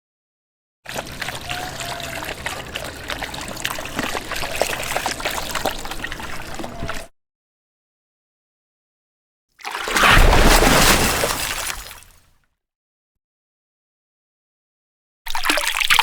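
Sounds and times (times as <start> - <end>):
water trickling and splashing: 0.9 - 7.1, 9.6 - 12.1.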